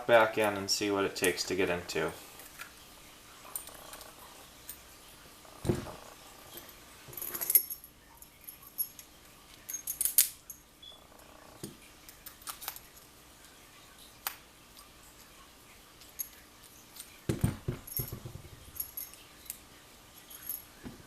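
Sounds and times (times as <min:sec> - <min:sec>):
padlock and keys clinking: 0:07.1 - 0:10.7, 0:16.0 - 0:17.2, 0:17.8 - 0:19.6.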